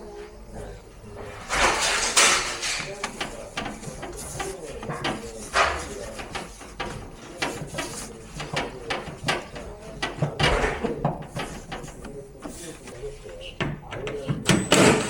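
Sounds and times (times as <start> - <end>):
rustling: 1.1 - 13.6
sharp clicks and knocks: 1.2 - 13.0.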